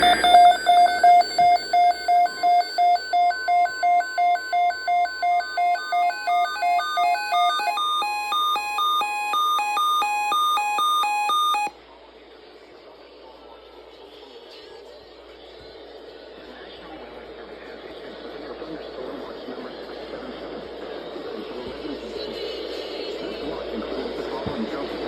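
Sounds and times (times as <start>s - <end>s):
electronic alert alarm beeping: 0.0s - 11.7s.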